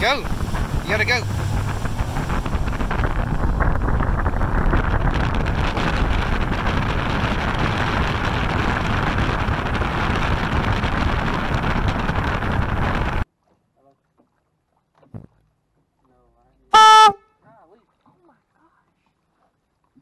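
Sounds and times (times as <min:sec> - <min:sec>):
outboard motor running: 0:00.0 - 0:13.2
wind rushing over microphone: 0:00.0 - 0:13.2.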